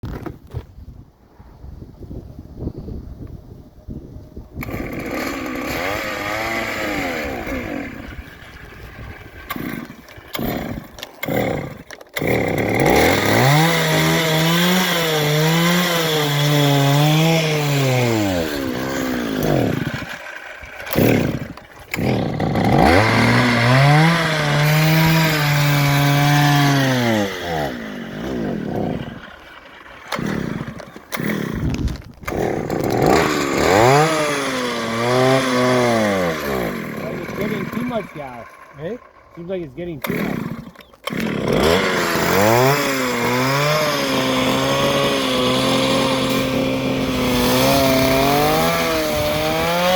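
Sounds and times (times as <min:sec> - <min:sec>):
small gas engine running rough: 0:04.6 - 0:49.9.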